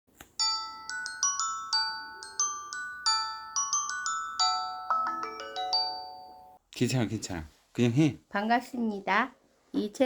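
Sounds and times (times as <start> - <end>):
bell-like mallet melody: 0.4 - 6.6.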